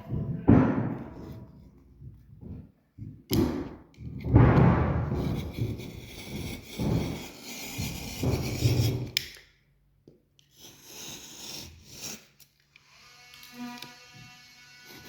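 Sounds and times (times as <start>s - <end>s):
blade scraping plasterboard: 4.2s - 9.2s, 10.5s - 12.4s, 13.4s - 15.0s.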